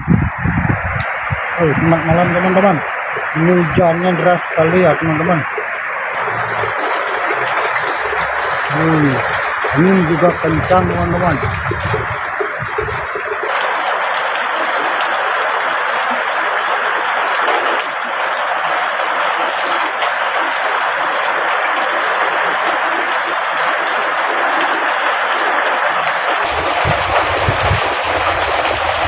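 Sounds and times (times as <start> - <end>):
wind buffeting microphone: 0.0 - 2.5, 6.2 - 13.4, 26.4 - 29.0
heavy rain pouring: 0.0 - 29.0.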